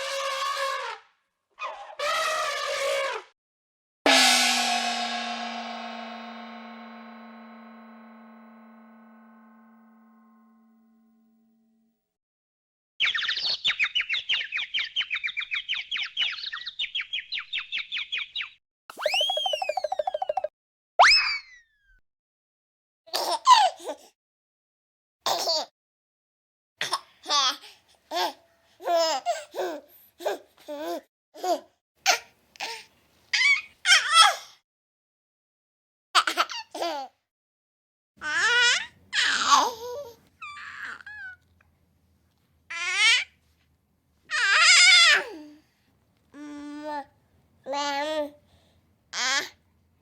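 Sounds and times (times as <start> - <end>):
cartoon birds twittering: 13.0 - 21.2
cartoon whistle gliding: 18.9 - 21.6
baby crying and squealing: 44.3 - 45.4.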